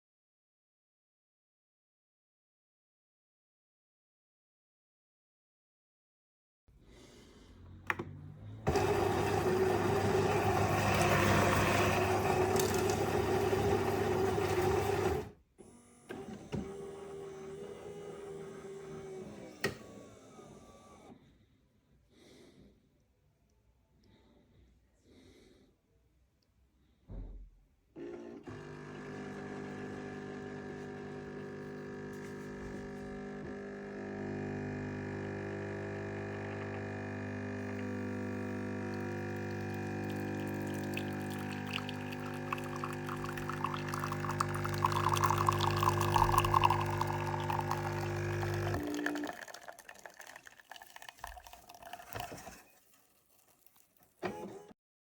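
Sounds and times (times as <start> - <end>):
coffee machine hum: 7.5 - 21.1, 28.0 - 52.7
coffee pouring into cup: 8.7 - 15.3, 37.6 - 54.2.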